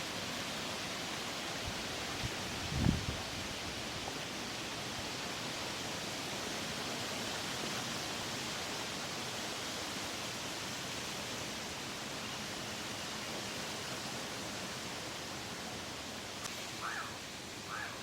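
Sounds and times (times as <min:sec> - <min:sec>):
strong wind blowing: 0:02.2 - 0:03.6.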